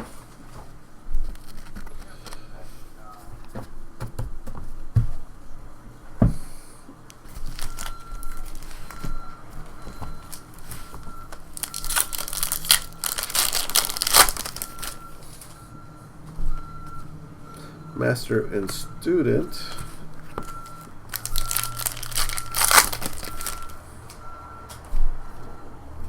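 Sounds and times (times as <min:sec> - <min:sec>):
wrappers tearing and crinkling: 0:01.3 - 0:02.4, 0:07.4 - 0:09.0, 0:11.3 - 0:15.1, 0:20.7 - 0:23.8
faint reversing beeper: 0:07.6 - 0:26.0.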